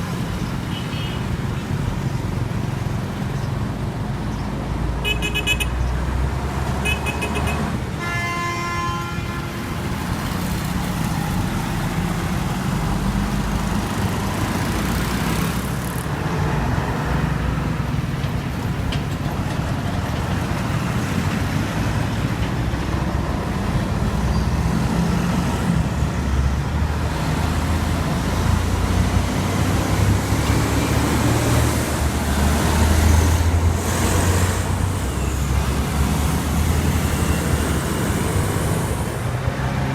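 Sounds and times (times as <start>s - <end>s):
heavy vehicle engines: 0.0s - 39.9s
road noise: 0.0s - 39.9s
vehicle horn: 5.0s - 5.8s, 6.8s - 9.9s.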